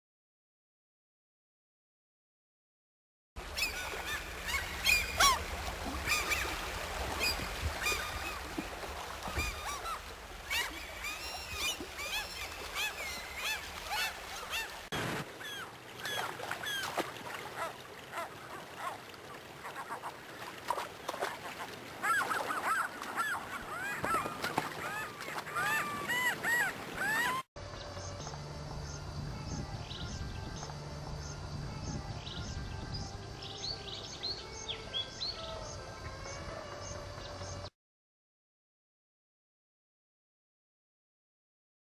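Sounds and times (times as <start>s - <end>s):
waterfowl honking: 3.6s - 6.6s, 9.2s - 19.0s.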